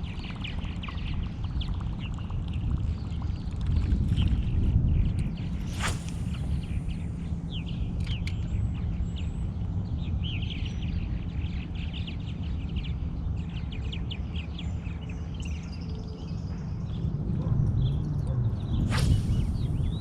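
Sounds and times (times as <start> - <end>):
steady low rumble: 4.8 - 10.6, 16.8 - 20.0.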